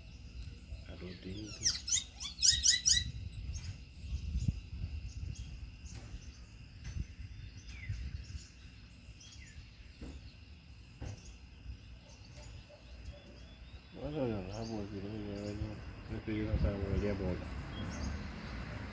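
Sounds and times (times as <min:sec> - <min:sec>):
faint bird chirps: 0:00.0 - 0:18.9
high insect trill: 0:00.0 - 0:18.9
wind buffeting microphone: 0:02.8 - 0:08.8, 0:15.3 - 0:18.9.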